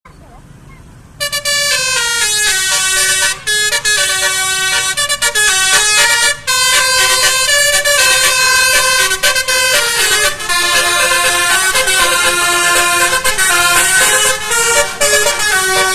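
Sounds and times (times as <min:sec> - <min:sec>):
multi-trumpet air horn tune: 0:01.2 - 0:15.9.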